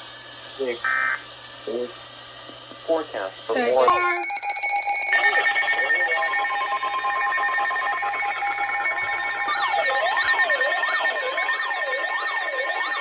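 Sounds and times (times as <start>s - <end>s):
steady electronic alarm beeps: 3.9s - 13.0s
warbling alarm tone: 3.9s - 13.0s.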